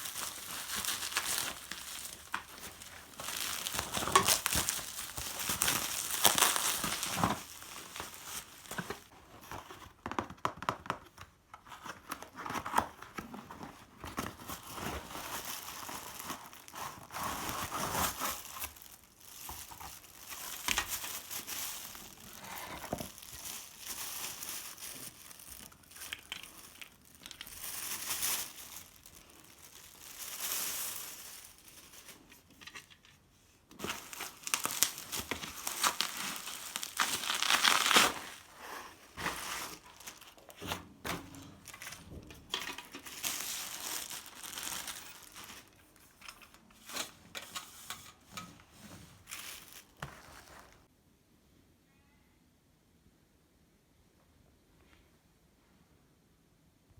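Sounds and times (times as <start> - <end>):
packaging crinkling and rustling: 0.0 - 50.9.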